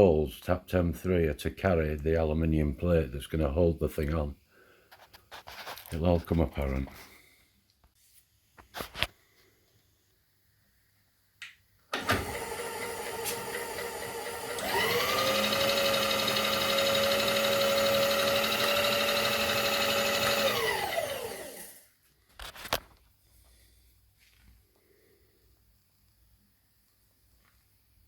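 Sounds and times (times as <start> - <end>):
electric motor whining: 12.0 - 21.8.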